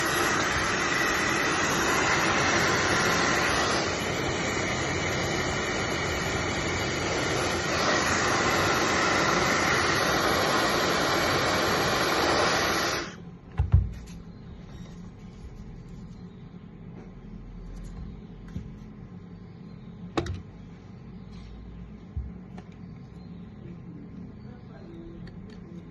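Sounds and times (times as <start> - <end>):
hair dryer blowing: 0.0 - 13.2.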